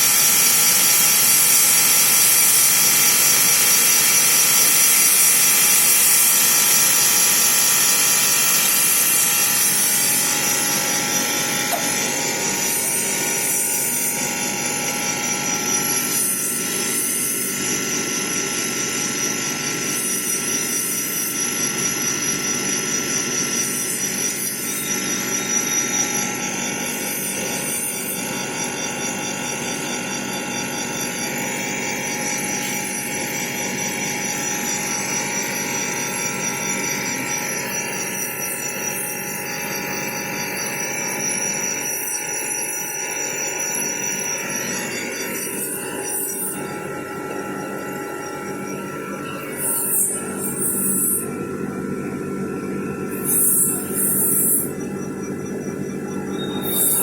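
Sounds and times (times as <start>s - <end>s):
lathe machine drone: 0.0s - 57.0s.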